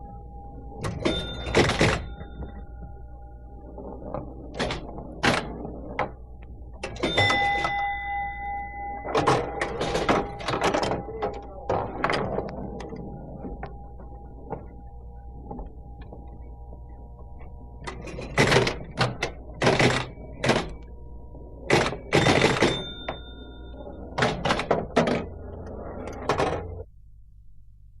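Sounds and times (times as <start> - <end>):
faint ringing tones: 0.0 - 26.9
pinball flippers clacking: 0.8 - 2.8, 3.8 - 6.2, 6.8 - 8.0, 9.0 - 14.7, 17.8 - 20.9, 21.7 - 26.8.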